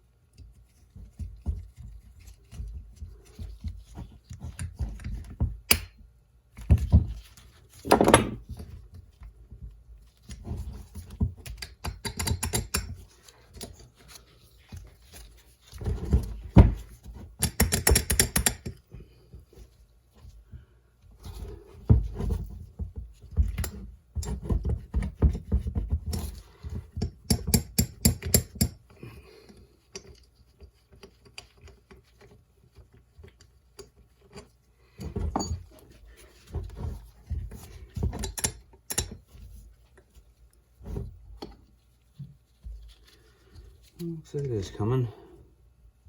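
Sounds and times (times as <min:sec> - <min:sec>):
metal tools knocking and scraping: 0:07.8 - 0:08.4, 0:33.8 - 0:39.4.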